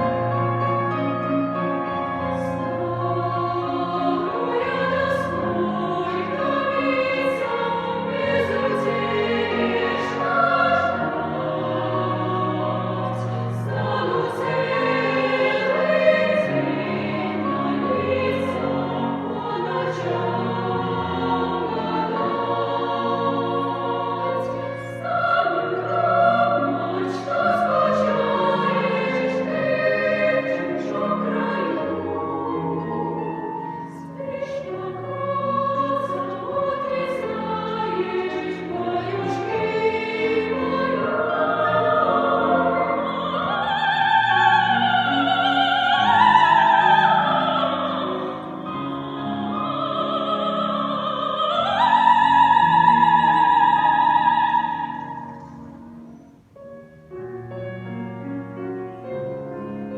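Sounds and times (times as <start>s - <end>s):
choir singing: 0.0s - 56.4s
woman singing soprano: 42.8s - 55.6s.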